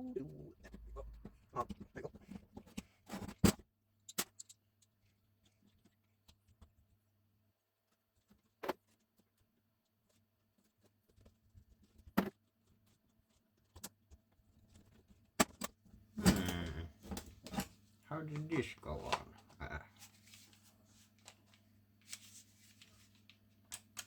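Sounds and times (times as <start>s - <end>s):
small parts clicking and knocking: 4.0s - 6.0s.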